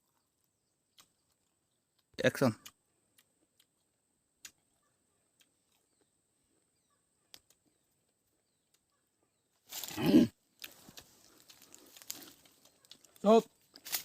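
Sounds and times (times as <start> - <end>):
mouth smacking and crackling: 0.9 - 5.9, 9.8 - 14.0
person groaning: 9.9 - 10.3.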